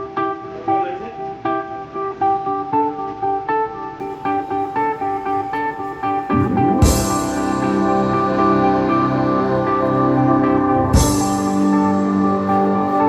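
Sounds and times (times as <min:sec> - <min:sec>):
plucked guitar-like melody: 0:04.0 - 0:13.0.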